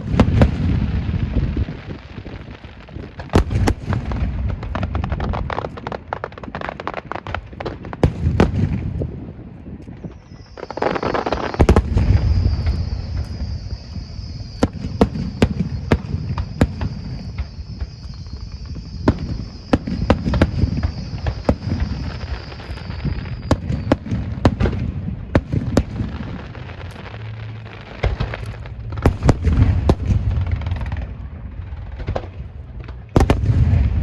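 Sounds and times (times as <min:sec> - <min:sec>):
fireworks sharp bangs: 0:00.0 - 0:34.0
low rumble of booms: 0:00.0 - 0:34.0
high whistle: 0:09.9 - 0:24.3.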